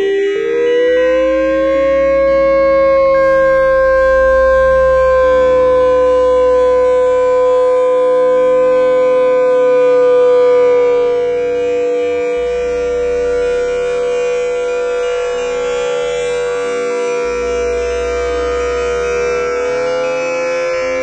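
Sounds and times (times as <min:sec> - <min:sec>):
siren-like wail: 0:00.0 - 0:21.0.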